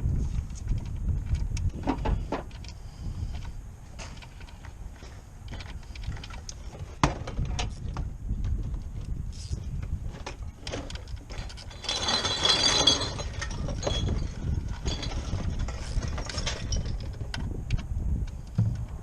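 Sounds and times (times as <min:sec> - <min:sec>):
tools clinking: 0:10.2 - 0:17.2.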